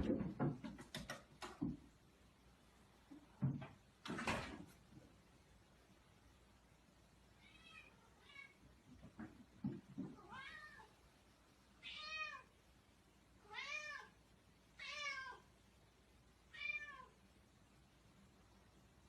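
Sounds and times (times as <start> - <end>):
cat meowing: 7.4 - 8.6, 10.2 - 10.9, 11.8 - 12.5, 13.4 - 14.2, 14.8 - 15.5, 16.5 - 17.2.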